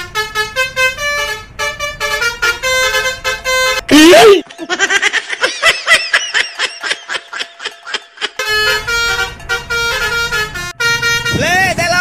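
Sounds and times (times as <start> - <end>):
musical bus horn melody: 0.0 - 4.3, 8.3 - 12.0.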